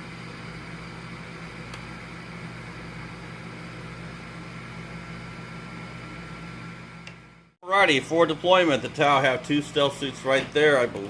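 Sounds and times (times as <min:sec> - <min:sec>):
appliance hum: 0:00.0 - 0:11.0
small click: 0:07.0 - 0:07.2.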